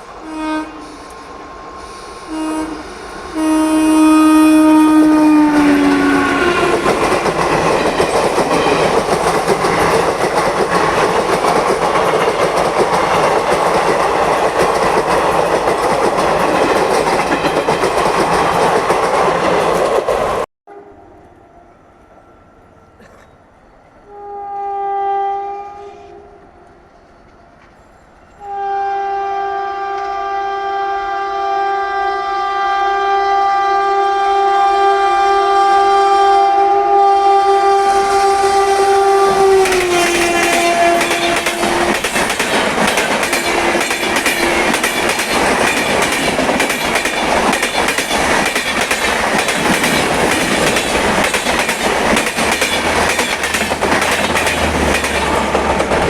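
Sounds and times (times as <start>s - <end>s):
locomotive horn blast: 0.2s - 1.2s, 2.3s - 7.0s, 24.0s - 26.8s, 28.4s - 42.1s
train wheels rattling over rails: 4.9s - 20.5s, 38.0s - 56.0s.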